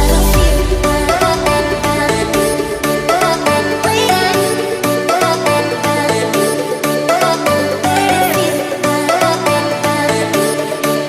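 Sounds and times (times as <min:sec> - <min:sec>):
background music with steady beat: 0:00.0 - 0:11.0.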